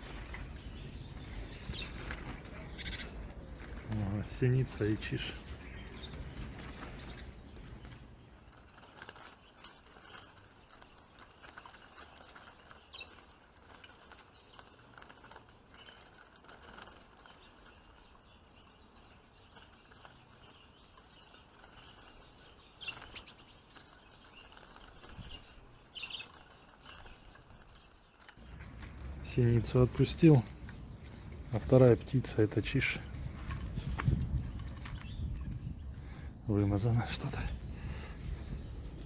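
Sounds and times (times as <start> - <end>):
light rustling: 0.0 - 8.6, 28.4 - 39.0
songbirds chirping: 0.0 - 39.0.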